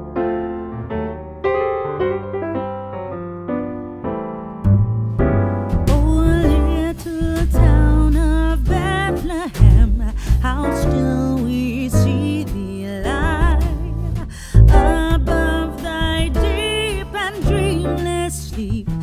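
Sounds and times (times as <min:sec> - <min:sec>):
electric piano chords: 0:00.0 - 0:18.6
bass line: 0:04.6 - 0:19.0
person singing: 0:05.9 - 0:19.0.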